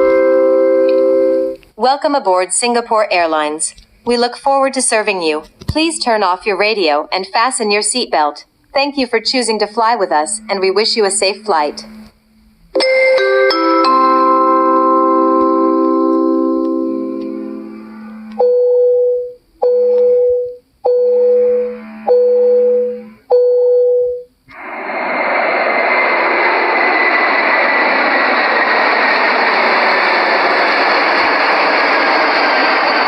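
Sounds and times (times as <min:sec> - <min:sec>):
electronic cabin chimes: 0:00.0 - 0:01.6, 0:08.8 - 0:26.6
jet engines and airflow: 0:08.8 - 0:18.6, 0:24.5 - 0:33.0.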